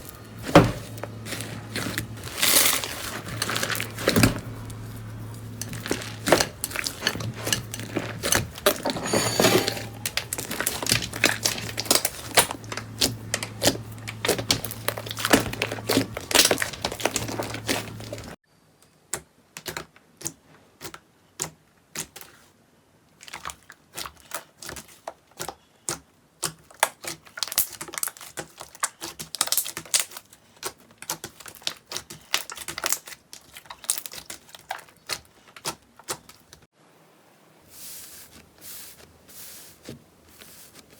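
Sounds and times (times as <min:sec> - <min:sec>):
slime crackling and popping: 0:10.1 - 0:18.3, 0:25.9 - 0:36.4.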